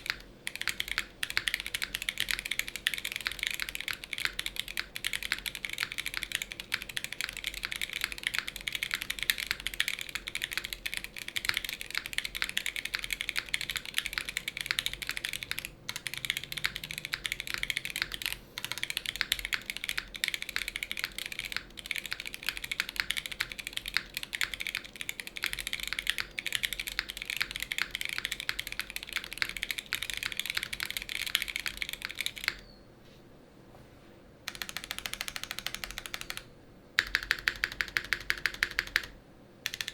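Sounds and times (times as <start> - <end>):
mechanical keyboard typing: 0.0 - 32.6, 34.5 - 39.9.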